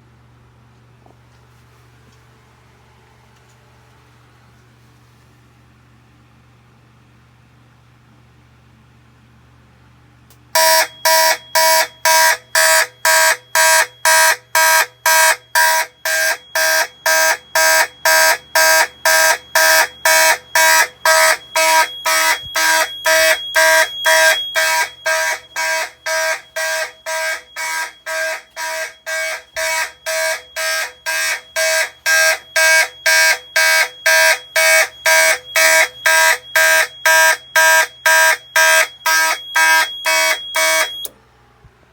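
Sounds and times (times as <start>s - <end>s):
fire alarm horns pulsing: 10.6s - 41.1s.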